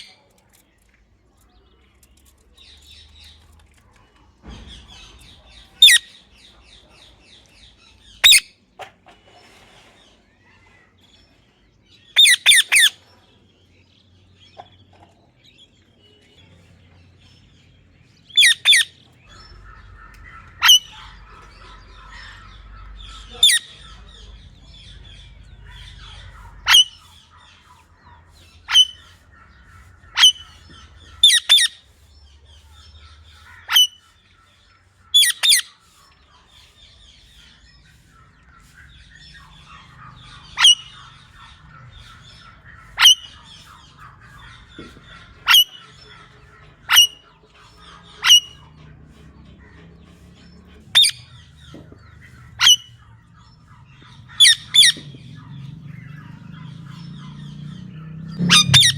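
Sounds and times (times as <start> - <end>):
parrot squawking: 5.8 - 6.2, 8.2 - 8.5, 12.2 - 13.0, 18.4 - 31.9, 32.8 - 58.9.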